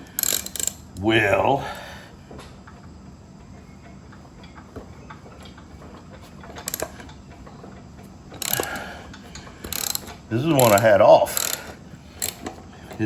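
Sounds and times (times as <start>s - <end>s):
ratchet wrench clicking: 0.0s - 0.9s, 6.4s - 7.1s, 8.3s - 13.0s.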